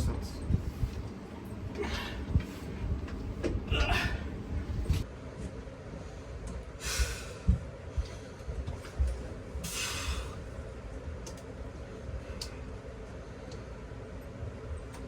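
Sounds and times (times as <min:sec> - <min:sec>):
loud breathy puffs: 0:06.8 - 0:08.5, 0:09.6 - 0:10.5.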